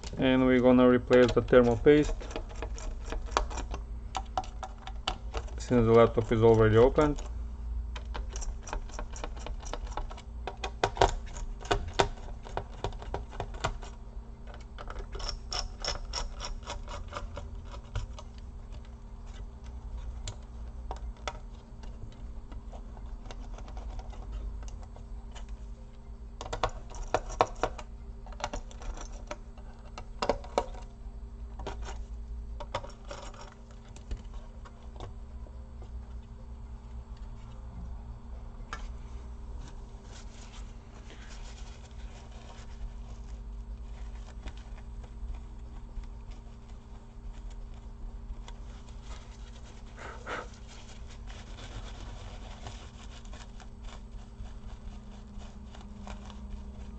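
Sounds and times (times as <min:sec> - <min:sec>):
steady low hum: 0:00.0 - 0:56.9
small tools clicking and rattling: 0:14.5 - 0:18.4.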